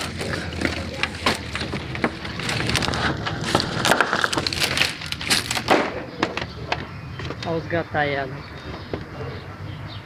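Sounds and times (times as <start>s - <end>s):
crunching and crackling: 0.0s - 7.6s.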